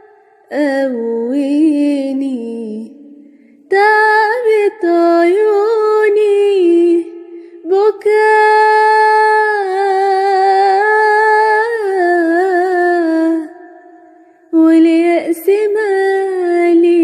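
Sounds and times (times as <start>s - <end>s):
woman singing with vibrato: 0.0s - 17.0s.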